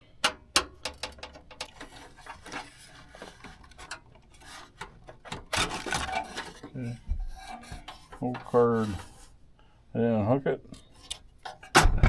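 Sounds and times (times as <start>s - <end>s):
computer parts scraping: 0.2s - 9.4s.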